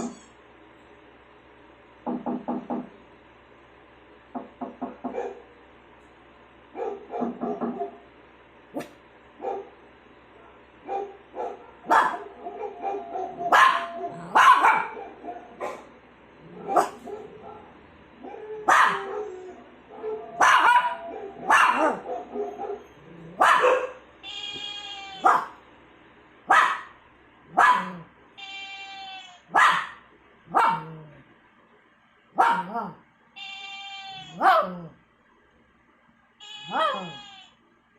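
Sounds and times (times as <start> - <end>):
small dog barking: 5.0 - 5.5, 6.7 - 8.0, 8.8 - 9.8, 10.4 - 24.1, 25.2 - 25.6, 26.5 - 28.1, 29.5 - 31.0, 32.4 - 33.0, 34.2 - 35.0, 36.6 - 37.3.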